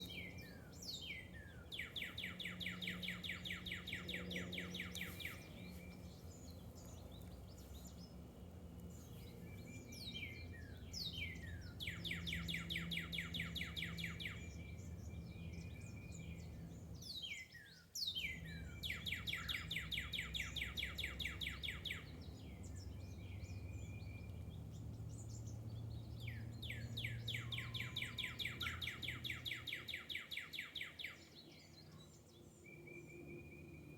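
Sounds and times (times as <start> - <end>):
low steady hum: 0.0 - 30.4
songbird singing trill: 0.0 - 33.9.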